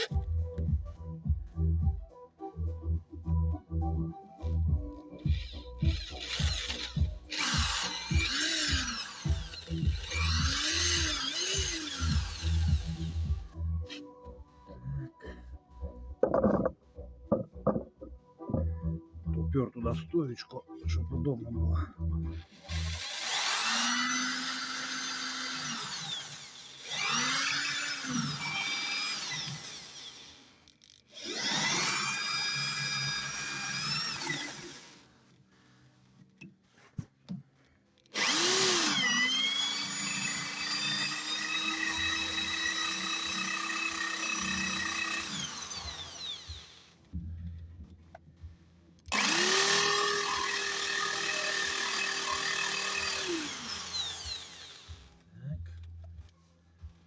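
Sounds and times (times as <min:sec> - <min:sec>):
power drill drilling into metal: 0:05.2 - 0:14.0, 0:22.5 - 0:30.5, 0:31.2 - 0:35.1, 0:38.1 - 0:47.0, 0:49.1 - 0:55.1.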